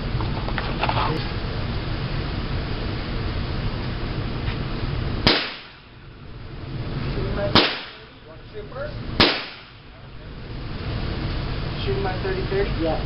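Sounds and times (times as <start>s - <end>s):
gunshots with echo: 5.3s - 5.8s, 7.6s - 8.1s, 9.2s - 9.8s.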